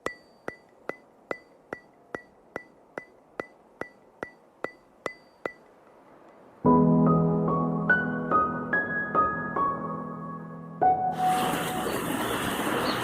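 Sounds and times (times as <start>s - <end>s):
sharp ringing ticks: 0.0s - 6.5s.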